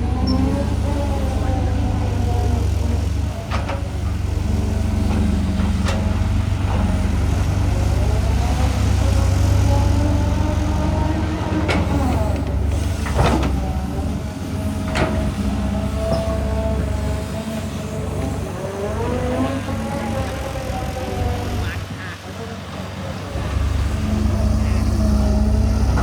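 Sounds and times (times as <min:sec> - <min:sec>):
diesel engine rumble: 0:00.0 - 0:26.0
hydraulic whine: 0:23.3 - 0:26.0.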